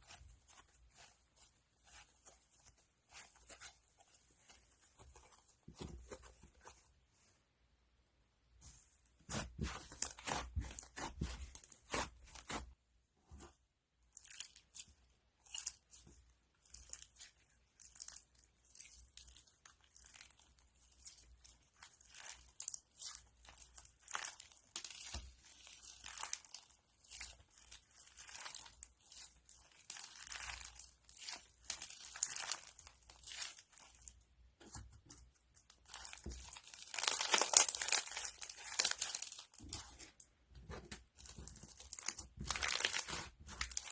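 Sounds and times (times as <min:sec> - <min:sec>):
crunchy slime crackling: 0:14.1 - 0:34.8, 0:35.5 - 0:40.2, 0:41.0 - 0:43.9.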